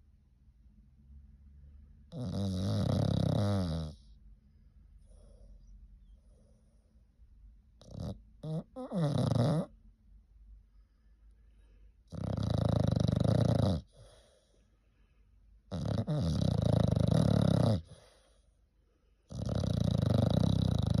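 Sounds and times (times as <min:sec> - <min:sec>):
dog snoring loudly: 0:02.1 - 0:04.1, 0:07.8 - 0:09.7, 0:12.1 - 0:14.2, 0:15.7 - 0:18.2, 0:19.3 - 0:21.0.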